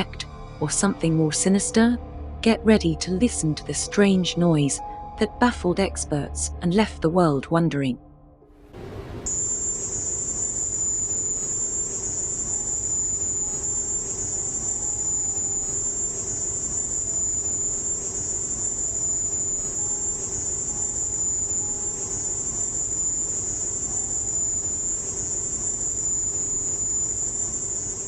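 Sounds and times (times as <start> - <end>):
hissy humming background: 0.0 - 8.0, 8.7 - 28.0
piercing high-pitched shrill: 8.7 - 28.0.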